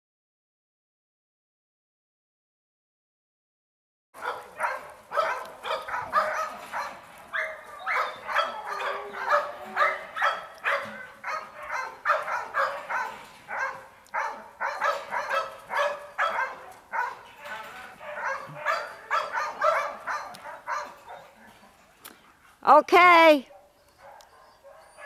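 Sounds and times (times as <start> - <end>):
dogs barking: 4.2 - 22.4, 23.4 - 25.0.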